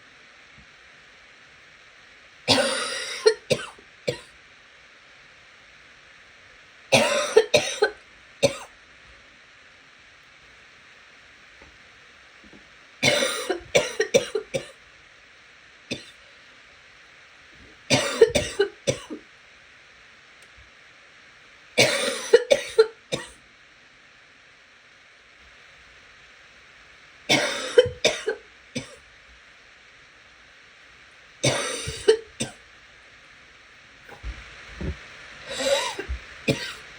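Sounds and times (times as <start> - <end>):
faint steady hiss: 0.0 - 36.9
congested person coughing: 2.5 - 4.3, 6.9 - 8.7, 13.0 - 14.8, 15.9 - 16.2, 17.9 - 19.2, 21.8 - 23.4, 27.3 - 29.0, 31.4 - 32.6, 35.5 - 36.9.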